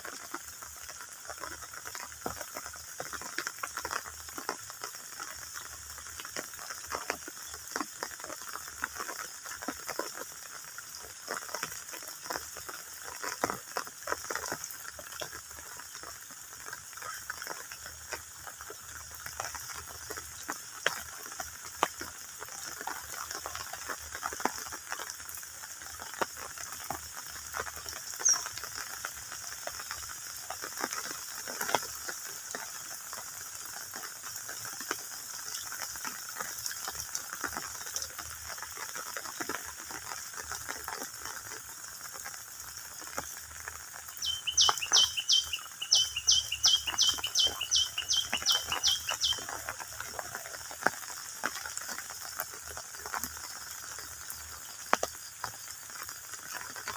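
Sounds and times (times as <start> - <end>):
steady outdoor hiss: 0.0 - 56.9
small ticks: 0.1 - 56.9.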